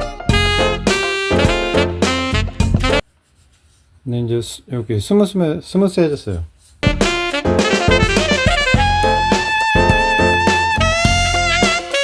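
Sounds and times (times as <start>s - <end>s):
lively background music: 0.0s - 3.0s, 6.8s - 12.0s.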